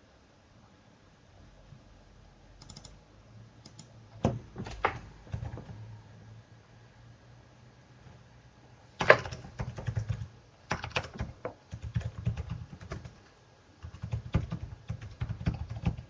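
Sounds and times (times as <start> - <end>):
faint low hum: 0.0 - 16.0
computer keyboard typing: 2.6 - 3.0, 3.6 - 5.8, 9.0 - 16.0.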